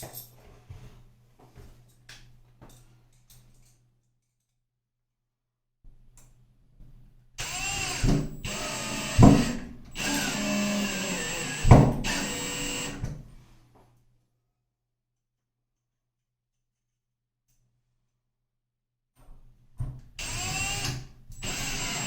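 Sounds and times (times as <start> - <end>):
power drill driving screws: 7.4 - 13.2, 20.2 - 22.0.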